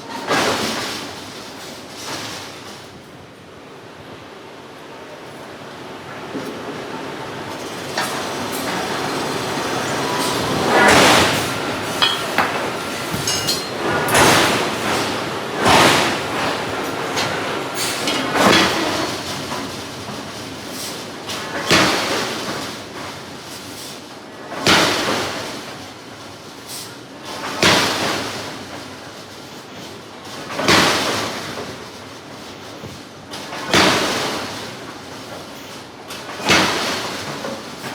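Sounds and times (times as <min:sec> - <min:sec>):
workshop noise: 0:04.8 - 0:22.6
forging hammer striking hot steel: 0:07.6 - 0:19.6.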